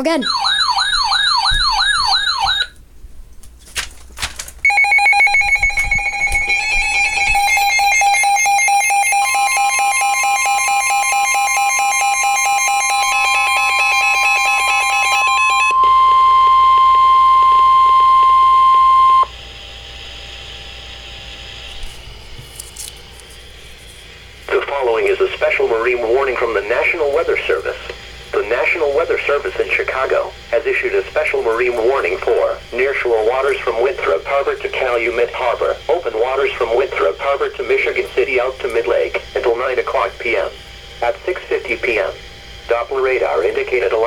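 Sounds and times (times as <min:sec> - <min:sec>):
fast electronic alarm beeping: 0:00.0 - 0:02.7, 0:04.6 - 0:19.3
steady warning alarm tone: 0:00.0 - 0:02.8, 0:04.6 - 0:21.8, 0:24.3 - 0:44.0.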